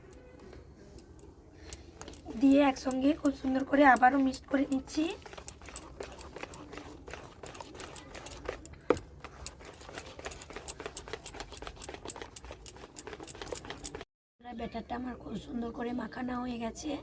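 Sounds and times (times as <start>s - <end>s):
utensil scraping bowl: 1.6s - 14.0s.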